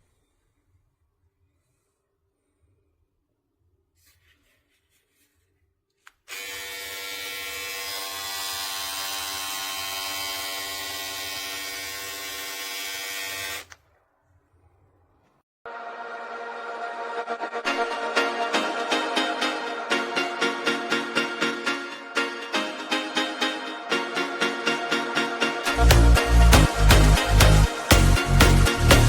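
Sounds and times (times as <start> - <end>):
electric trimmer buzzing: 6.3 - 13.8.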